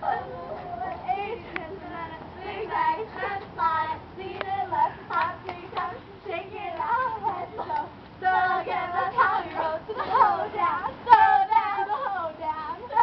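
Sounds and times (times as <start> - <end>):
young people singing: 0.0 - 13.0
hand claps: 5.1 - 5.9.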